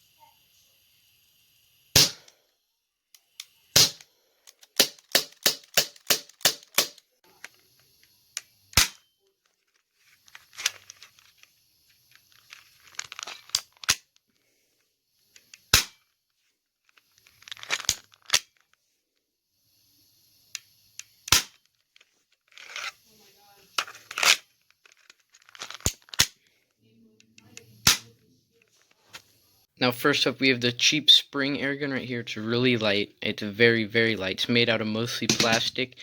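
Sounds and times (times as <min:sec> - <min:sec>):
airsoft pistol pops: 0:02.0 - 0:02.3, 0:03.8 - 0:04.1, 0:04.8 - 0:07.0, 0:15.7 - 0:16.0, 0:21.3 - 0:21.5, 0:27.8 - 0:28.1.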